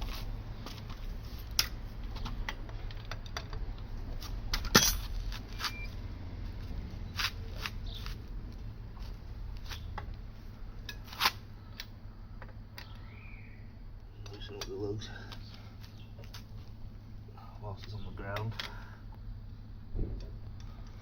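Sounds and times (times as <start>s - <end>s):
metal tools clinking: 4.5s - 5.9s.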